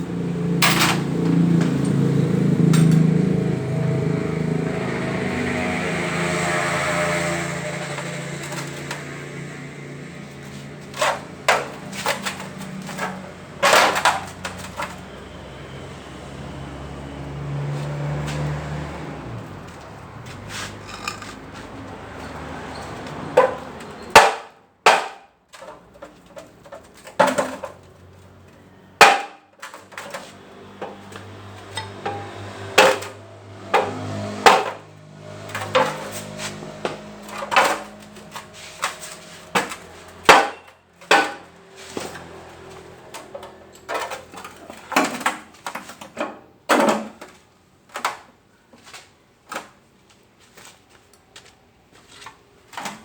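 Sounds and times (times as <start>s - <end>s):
hand tools clanking on metal parts: 0.1s - 3.4s, 5.6s - 15.3s, 19.7s - 47.4s.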